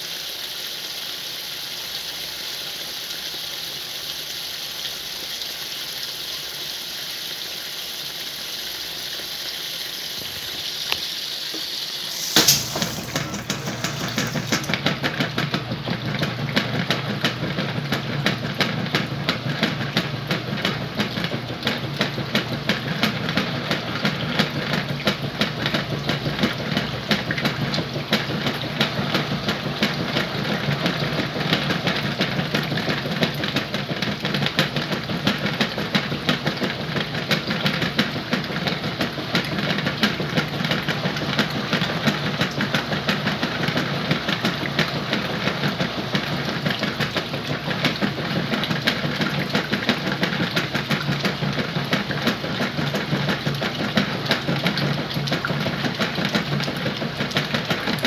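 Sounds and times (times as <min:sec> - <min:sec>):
washing machine hum and rattle: 0:10.0 - 0:58.0.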